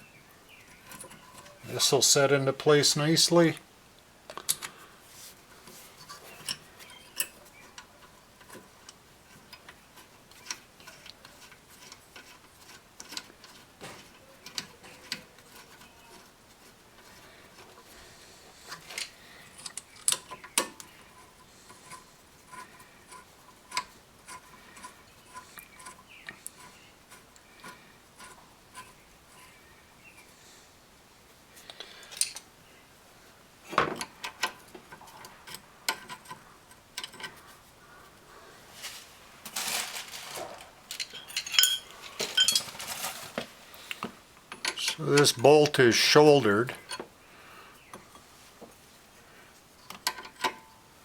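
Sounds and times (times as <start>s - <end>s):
metallic clicks and clinks: 40.9s - 42.8s.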